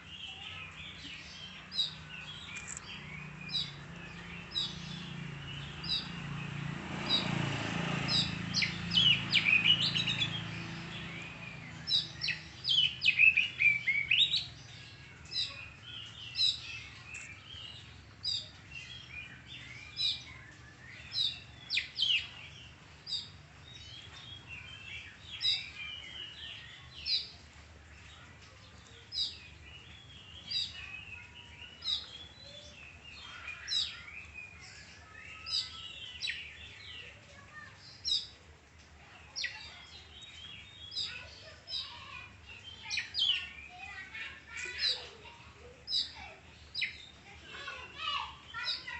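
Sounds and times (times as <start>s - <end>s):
sharp bird chirps: 1.8s - 6.2s.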